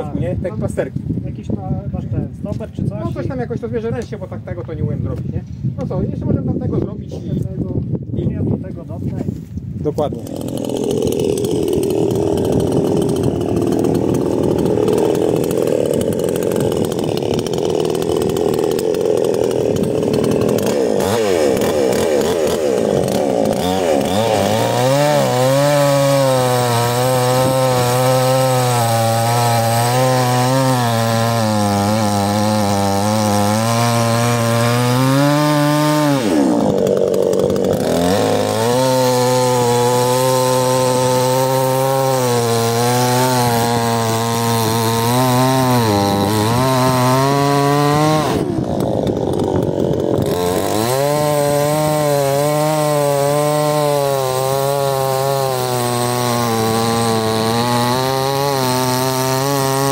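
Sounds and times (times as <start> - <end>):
chainsaw cutting log: 9.9 - 59.9.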